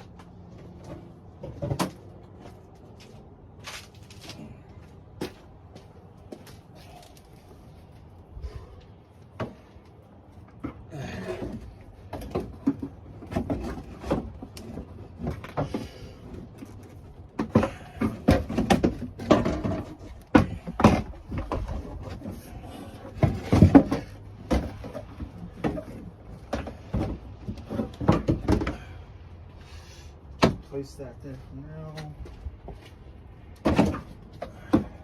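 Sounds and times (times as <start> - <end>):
plastic bumper knocks and scrapes: 10.6 - 28.9, 33.6 - 35.0.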